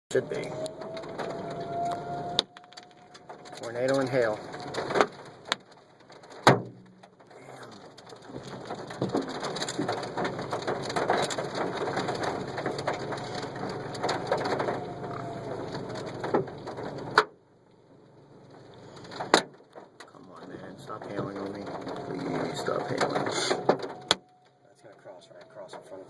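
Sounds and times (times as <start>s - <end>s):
hail pelting a car: 0.1s - 26.0s
louder hail knocks: 2.6s - 17.3s, 19.0s - 20.1s.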